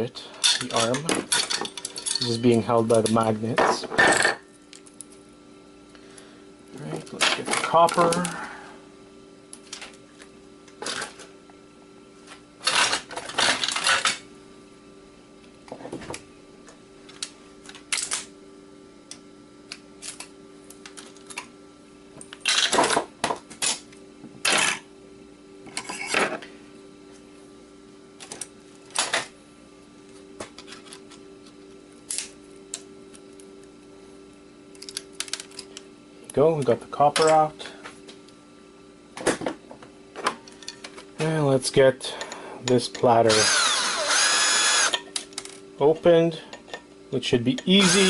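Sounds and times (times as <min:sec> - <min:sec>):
metal tools clicking and scraping: 0:00.4 - 0:03.3.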